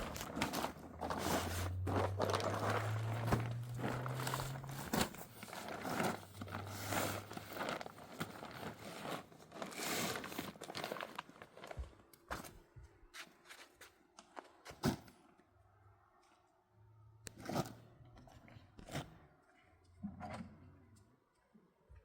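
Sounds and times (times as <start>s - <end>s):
rustling and crunching handling: 0.0s - 14.6s.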